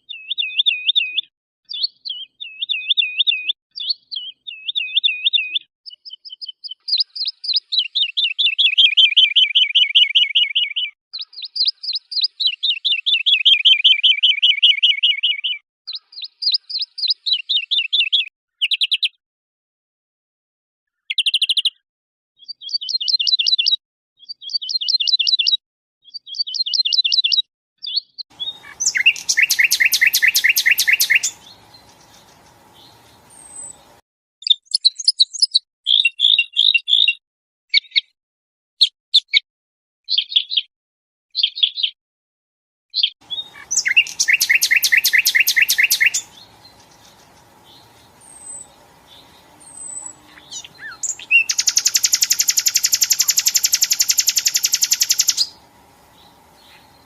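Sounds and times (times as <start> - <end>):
short bird chirps: 0.1 - 19.2, 22.4 - 37.2, 37.8 - 38.2, 43.0 - 57.0
fast pulsing bird trill: 28.4 - 33.8, 43.3 - 57.0
songbird warbling: 28.4 - 34.0, 43.2 - 57.0.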